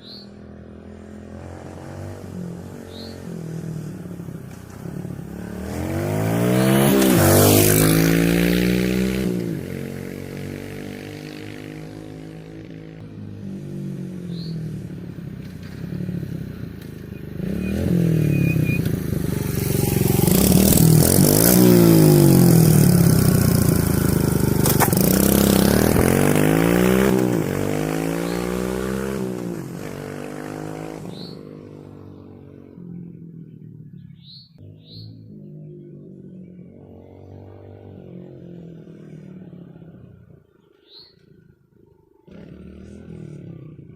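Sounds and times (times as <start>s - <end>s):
small motorbike engine revving: 0.9s - 13.0s, 13.6s - 32.3s, 42.2s - 43.9s.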